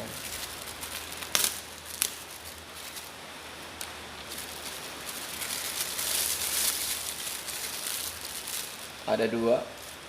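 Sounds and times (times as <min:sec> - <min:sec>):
packaging rustling: 0:00.0 - 0:10.0.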